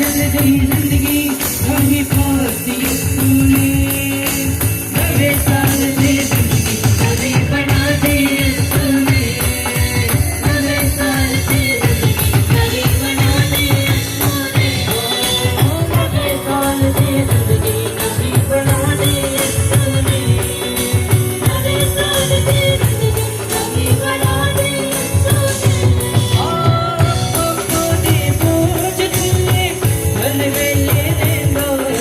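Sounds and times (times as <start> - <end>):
person singing: 0.0 - 32.0
steady drum beat: 0.0 - 32.0.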